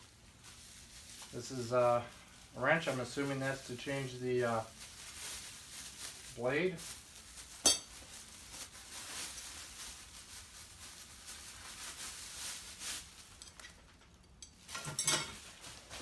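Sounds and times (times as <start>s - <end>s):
rustling packaging: 0.0s - 16.0s
metal tools clinking: 13.4s - 15.4s.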